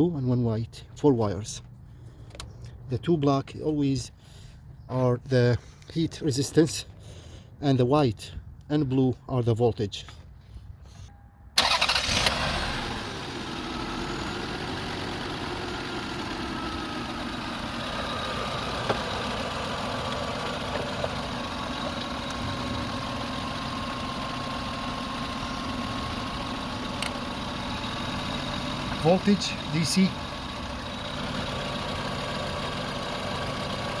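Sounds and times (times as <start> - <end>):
car engine starting and idling: 11.6 - 34.0.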